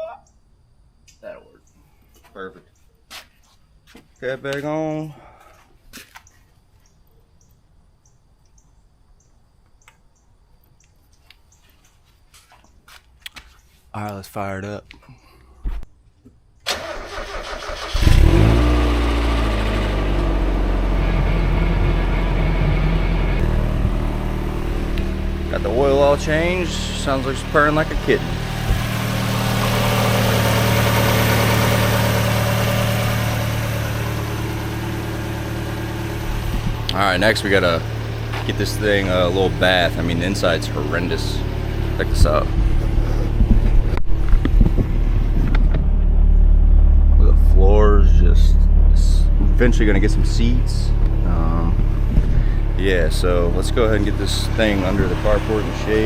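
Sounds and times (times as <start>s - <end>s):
small bird chirping: 6.2s - 12.0s
car engine idling: 16.7s - 56.0s
low steady rumble: 18.1s - 56.0s.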